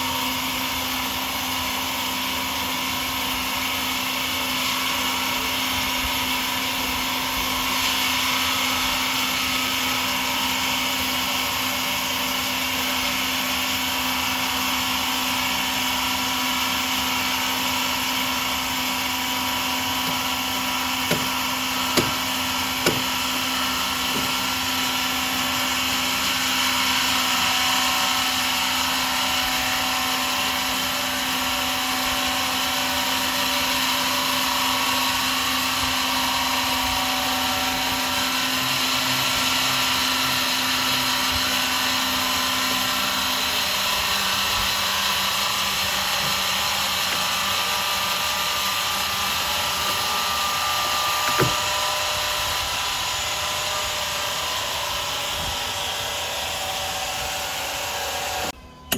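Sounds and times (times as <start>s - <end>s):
sawmill saw running: 0.0s - 58.6s
sharp knocks: 21.0s - 23.2s, 51.3s - 51.6s.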